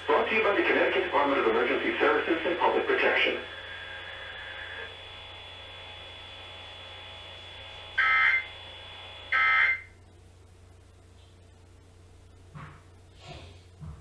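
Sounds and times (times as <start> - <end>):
two-pitch digital data tones: 8.0 - 8.5, 9.3 - 9.9.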